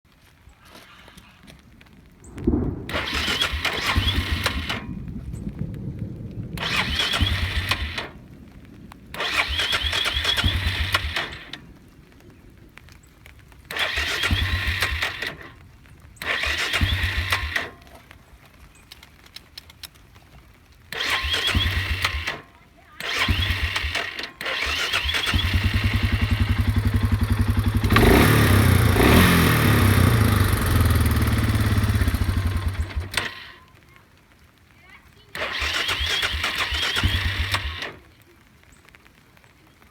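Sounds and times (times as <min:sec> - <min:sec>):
engine being cranked over: 0:02.9 - 0:04.9, 0:06.6 - 0:08.2, 0:09.1 - 0:11.6, 0:13.7 - 0:15.6, 0:16.2 - 0:17.9, 0:20.9 - 0:33.6, 0:35.3 - 0:38.0.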